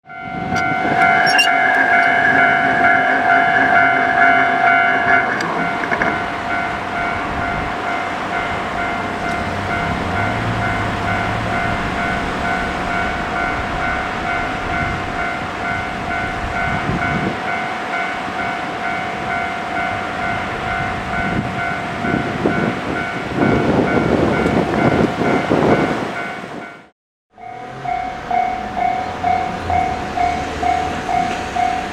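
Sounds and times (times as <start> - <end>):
train rumbling over crossing: 0.0 - 31.9
electronic level-crossing bell: 0.1 - 31.9
train horn: 0.3 - 19.6.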